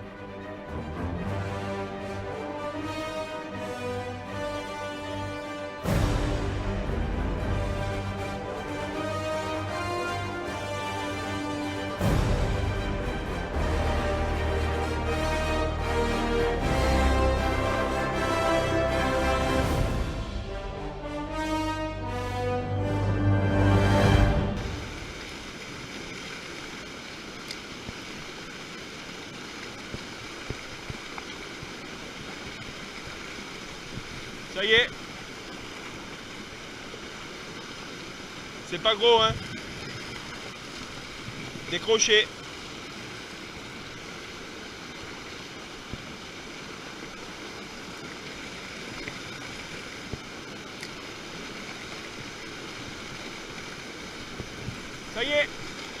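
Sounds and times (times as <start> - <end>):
flowing river water: 0.0 - 56.0
intro music: 4.1 - 25.2
faint clicks: 50.8 - 51.0.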